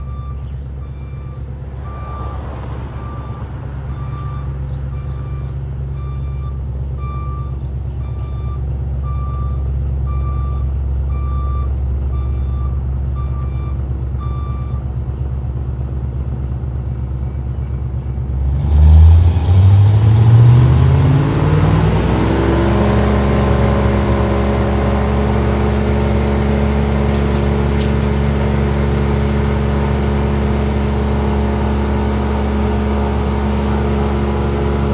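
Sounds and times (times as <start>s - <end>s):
reversing alarm beeping: 0.0s - 14.9s
heavy vehicle engine running low: 0.0s - 34.9s
engine revving: 1.6s - 6.2s, 18.1s - 34.9s.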